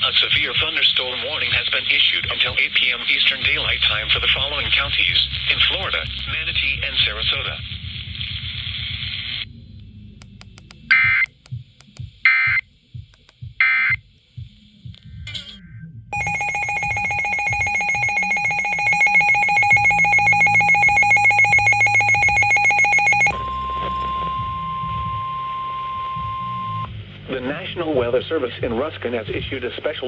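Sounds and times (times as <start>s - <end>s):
digital data bursts: 16.2s - 23.4s
pulsing electronic attention tone: 16.2s - 26.8s.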